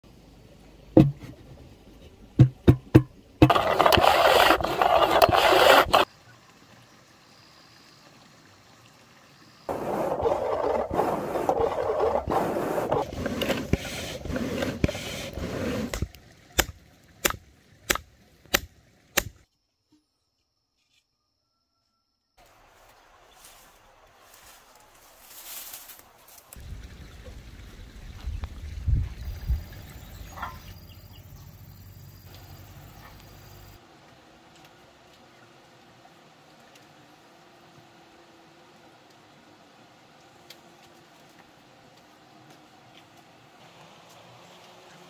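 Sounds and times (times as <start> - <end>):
rasping scrapes: 3.4 - 6.1, 9.7 - 16.1.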